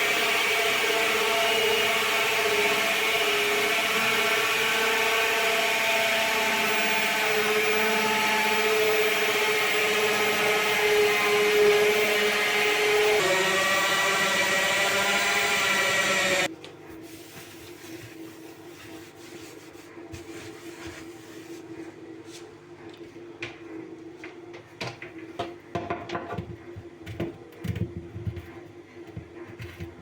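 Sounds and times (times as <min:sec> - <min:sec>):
drill with hole saw spinning: 0:00.0 - 0:16.5.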